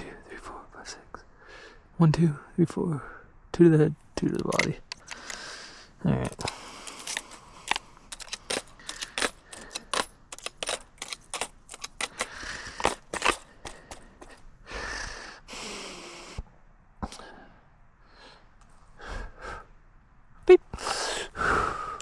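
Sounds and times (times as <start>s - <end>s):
revolver metallic clicks: 4.2s - 5.5s
brass cartridge cases jingling: 4.2s - 14.4s
scraping rustle: 4.3s - 5.4s, 6.2s - 14.4s.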